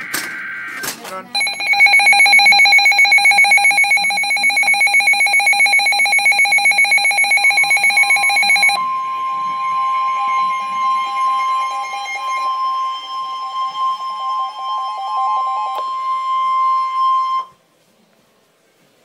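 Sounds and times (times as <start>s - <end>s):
rapidly pulsing alert tone: 1.4s - 12.5s.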